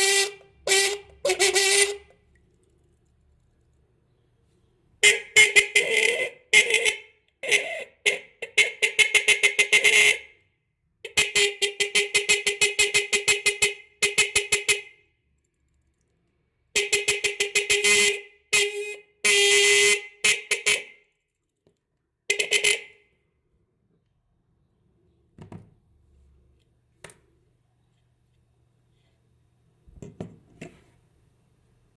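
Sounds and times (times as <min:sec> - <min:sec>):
electric car horn blaring: 0:00.0 - 0:02.2, 0:05.0 - 0:07.8, 0:16.8 - 0:21.0, 0:22.3 - 0:23.1.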